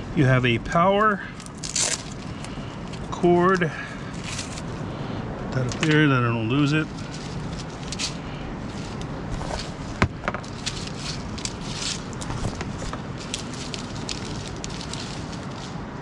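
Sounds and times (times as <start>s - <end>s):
steady background hiss: 0.0s - 16.0s
power cord crackling and rustling: 1.4s - 4.8s, 5.5s - 16.0s.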